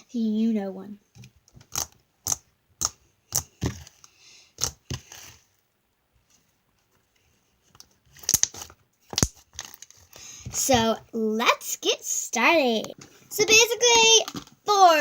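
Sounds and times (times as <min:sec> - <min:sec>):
crinkling and tearing: 0:07.8 - 0:10.2.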